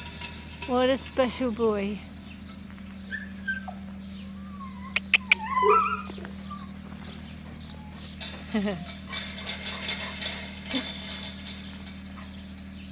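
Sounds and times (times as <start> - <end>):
low hum: 0.0 - 12.9
dog whining: 3.1 - 6.8.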